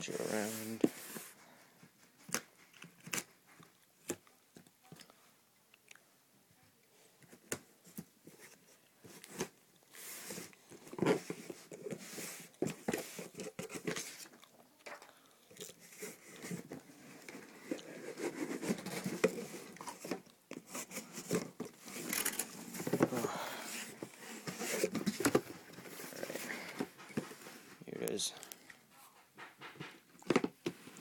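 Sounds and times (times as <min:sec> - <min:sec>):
packaging rustling and crinkling: 0:15.5 - 0:28.7.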